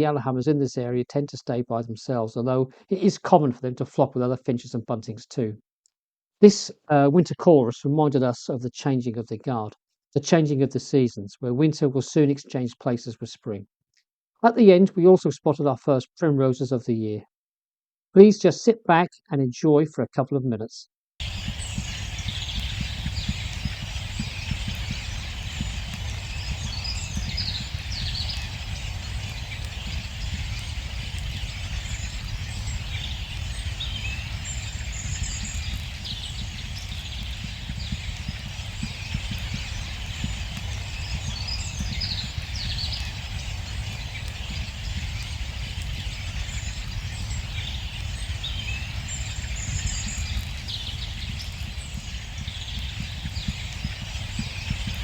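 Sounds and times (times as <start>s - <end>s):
metallic bird calls: 21.2s - 50.8s
steady low rumble: 21.2s - 52.3s
distant finch flock chattering: 21.2s - 55.0s
tinkling finch calls: 21.2s - 55.0s
wheezing finch calls: 21.2s - 55.0s.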